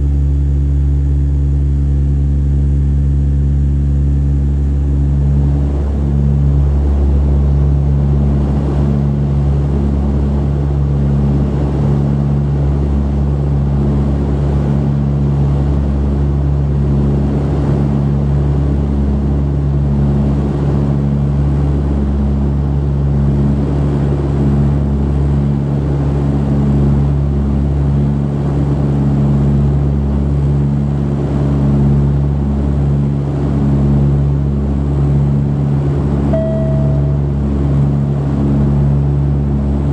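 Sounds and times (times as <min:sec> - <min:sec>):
turboprop cabin drone: 0:00.0 - 0:39.9.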